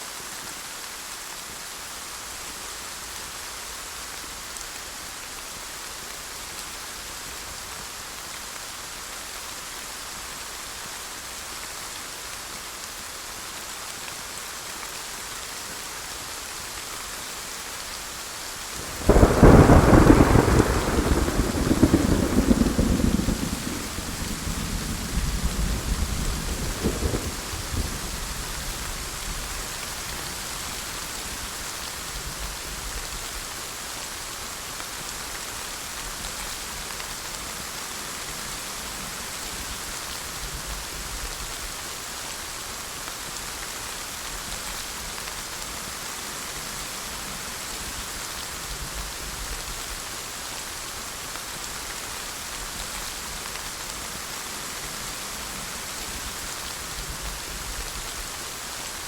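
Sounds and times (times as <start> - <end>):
steady rain: 0.0 - 59.0
thunder rumble: 18.8 - 28.8.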